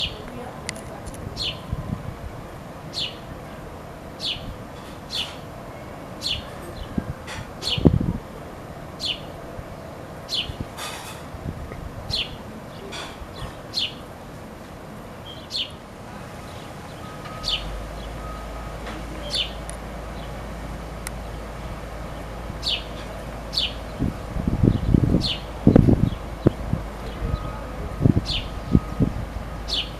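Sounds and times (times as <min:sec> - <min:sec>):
baby sparrow chirping: 0:01.3 - 0:01.8, 0:02.9 - 0:03.3, 0:04.2 - 0:05.4, 0:06.2 - 0:08.0, 0:09.0 - 0:09.4, 0:10.3 - 0:11.2, 0:12.1 - 0:14.0, 0:15.2 - 0:15.8, 0:16.4 - 0:20.3, 0:22.6 - 0:29.9.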